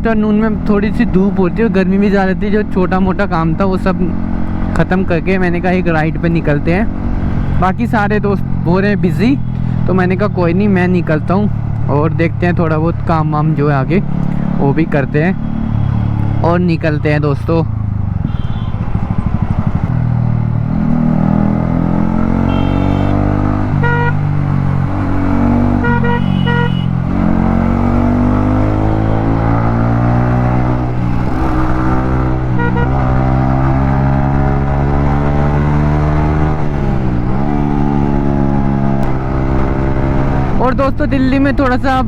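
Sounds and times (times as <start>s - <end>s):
motorcycle engine revving: 0.4s - 12.1s, 13.0s - 41.7s
vehicle horn honks: 18.2s - 19.0s, 22.4s - 24.2s, 25.7s - 27.0s, 32.5s - 33.0s.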